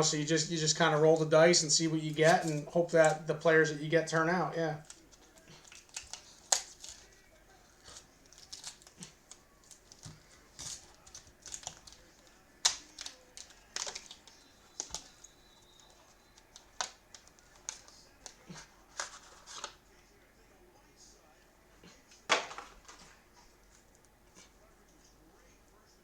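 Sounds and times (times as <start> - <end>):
cardboard and wrapper crackling: 0.0 - 3.3, 4.2 - 19.8.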